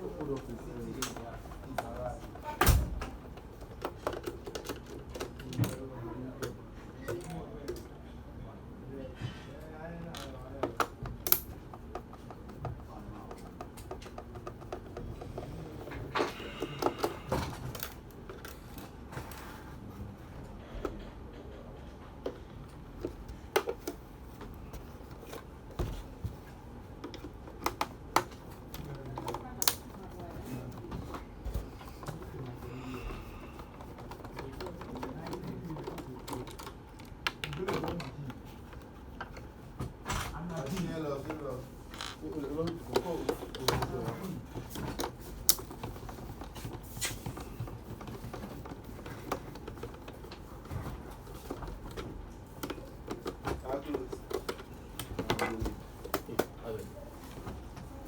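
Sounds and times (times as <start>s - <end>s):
plastic casing being handled: 22.2s - 40.0s, 40.7s - 58.0s.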